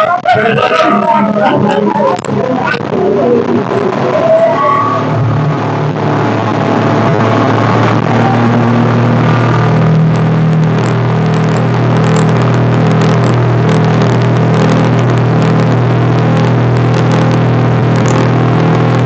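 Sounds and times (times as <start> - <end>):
engine running steadily: 0.0 - 19.0
loud rushing noise: 0.0 - 19.0
small crackles: 7.3 - 19.0.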